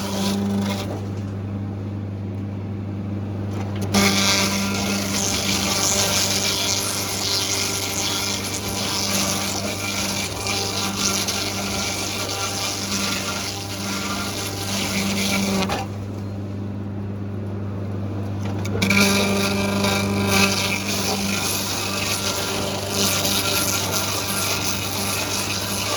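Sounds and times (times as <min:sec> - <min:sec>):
machinery low hum: 0:00.0 - 0:07.1, 0:14.8 - 0:25.7.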